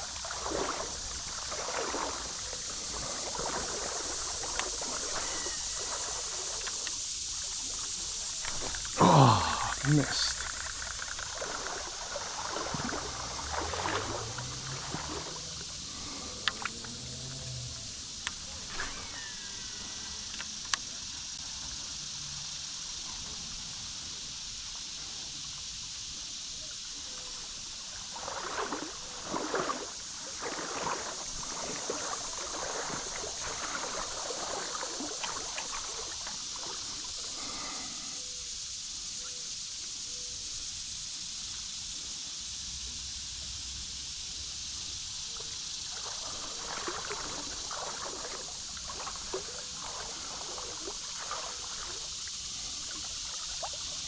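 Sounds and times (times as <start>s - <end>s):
splashing in water: 0.0s - 20.7s, 28.0s - 38.2s, 45.0s - 54.0s
creek water running: 0.0s - 54.0s.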